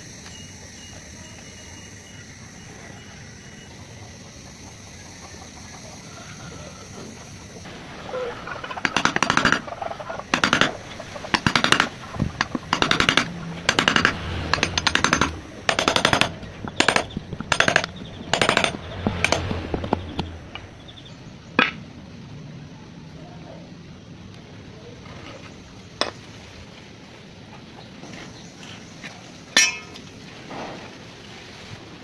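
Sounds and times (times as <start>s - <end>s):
power tool hammering fasteners: 7.6s - 21.0s.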